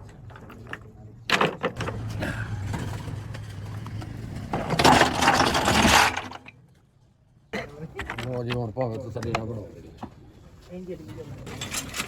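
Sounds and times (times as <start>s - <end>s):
vehicle engine humming: 1.8s - 5.3s.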